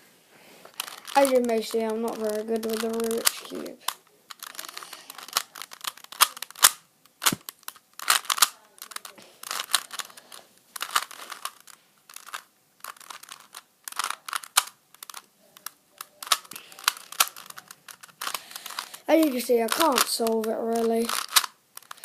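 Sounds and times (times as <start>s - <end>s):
puzzle cube layers clicking: 0.7s - 22.0s.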